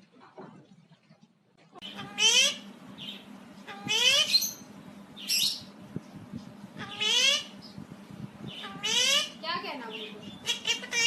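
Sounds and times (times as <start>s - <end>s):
parrot calling: 1.8s - 5.7s, 6.8s - 7.8s, 8.5s - 11.0s
parrot harsh squawk: 1.9s - 2.6s, 3.7s - 4.6s, 6.8s - 7.5s, 8.6s - 9.4s, 10.4s - 11.0s.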